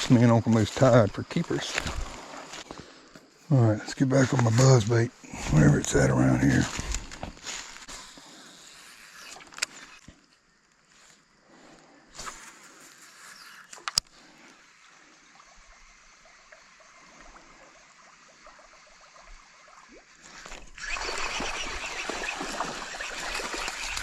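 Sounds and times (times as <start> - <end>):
faint water noise: 0.0 - 24.0
water churning and splashing: 16.5 - 24.0.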